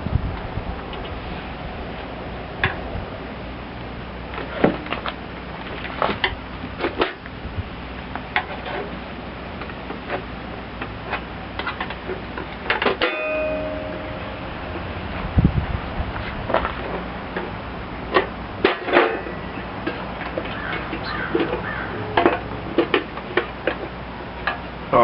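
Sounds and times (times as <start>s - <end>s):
steady low hum: 0.0s - 25.0s
clicks of hand tools and metal parts: 9.6s - 14.1s, 18.1s - 24.6s
metallic ring: 13.0s - 15.0s.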